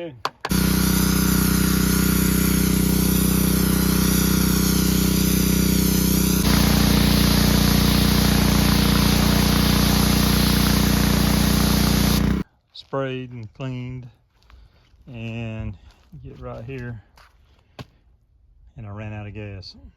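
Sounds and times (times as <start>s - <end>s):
pressure washer engine running: 0.5s - 12.4s.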